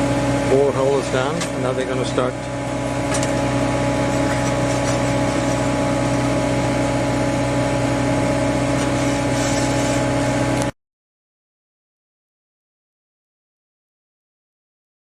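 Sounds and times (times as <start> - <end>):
engine idling: 0.0 - 10.7.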